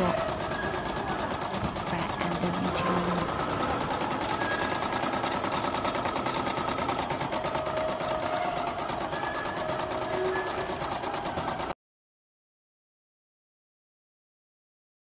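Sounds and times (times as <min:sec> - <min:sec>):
sewing machine running: 0:00.0 - 0:11.8.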